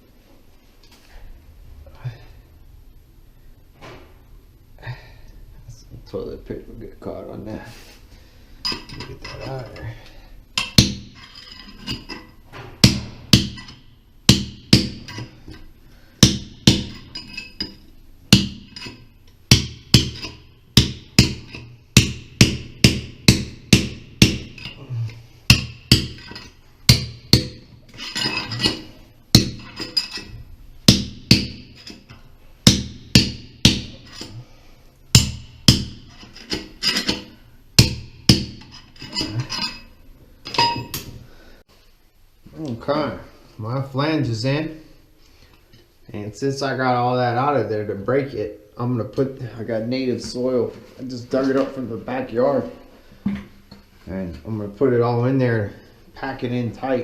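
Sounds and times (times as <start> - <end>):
hammer striking metal: 12.8 - 15.3, 16.2 - 24.8, 25.5 - 30.3, 30.9 - 34.3, 35.1 - 39.8, 40.5 - 41.1.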